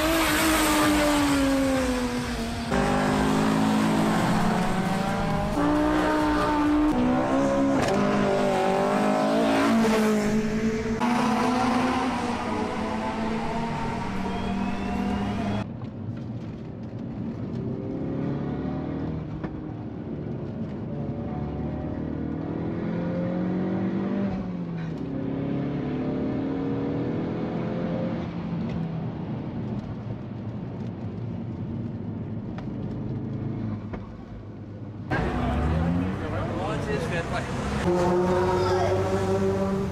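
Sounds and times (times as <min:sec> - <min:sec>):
race car engine accelerating: 0:00.0 - 0:15.6.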